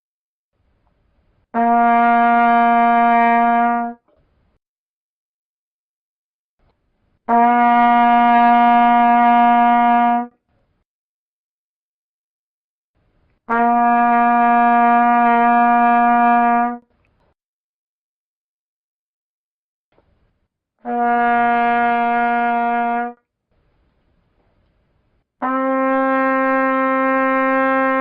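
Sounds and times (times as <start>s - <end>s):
trumpet long held notes: 1.5s - 4.0s, 7.3s - 10.4s, 13.5s - 16.9s, 20.8s - 23.2s, 25.4s - 28.0s.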